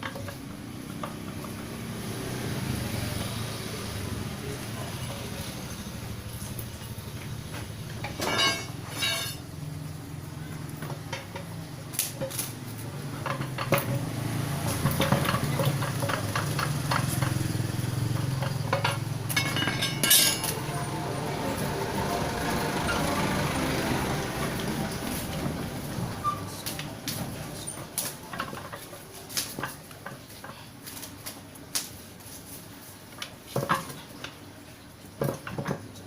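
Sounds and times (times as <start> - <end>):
metal tools clinking and knocking: 8.0 - 9.4, 18.1 - 20.8.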